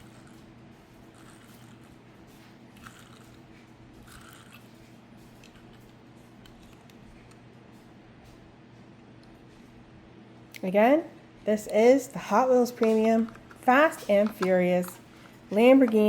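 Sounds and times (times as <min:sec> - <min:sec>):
low room hum: 0:00.0 - 0:16.0
small handling clicks: 0:12.8 - 0:16.0.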